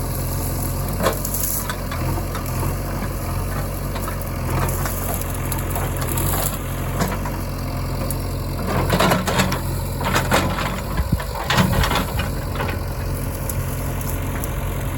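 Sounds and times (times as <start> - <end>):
diesel engine idling: 0.0 - 14.9
clanks and knocks: 8.7 - 13.0.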